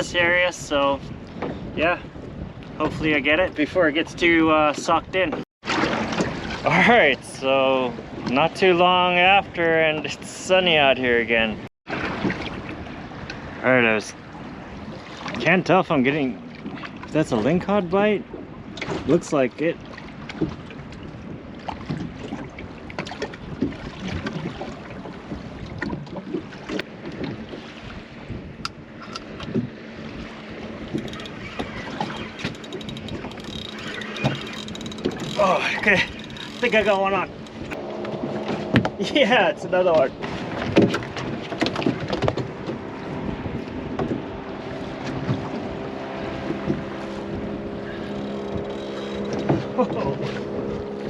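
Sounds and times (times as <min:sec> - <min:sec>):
water lapping against boat hull: 0:00.0 - 0:07.2, 0:07.8 - 0:13.6, 0:14.2 - 0:51.0
wind on microphone: 0:00.0 - 0:51.0
small outboard motor running: 0:28.8 - 0:39.0, 0:40.1 - 0:51.0.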